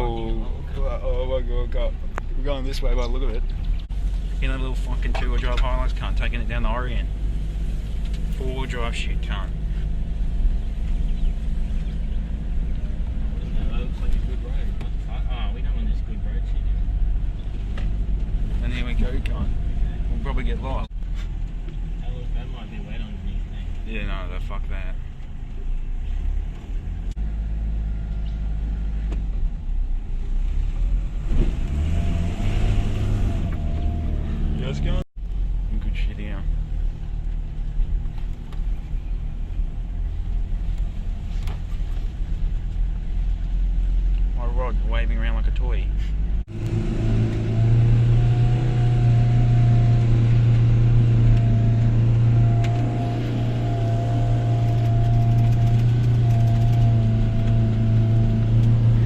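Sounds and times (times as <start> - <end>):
engine and road rumble: 0.0 - 59.0
engine drone inside vehicle cab: 46.0 - 59.0.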